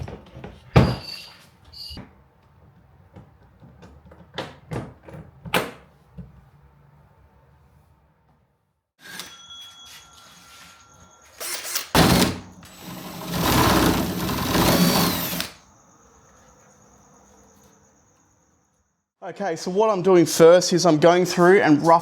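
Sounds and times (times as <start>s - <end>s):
power sander grinding: 12.7s - 15.5s.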